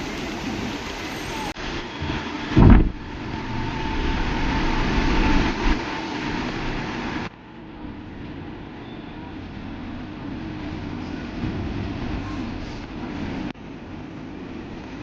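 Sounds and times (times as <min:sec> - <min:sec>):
rumbling vehicle ride noise: 0:00.0 - 0:15.0
loud thump: 0:02.5 - 0:03.0.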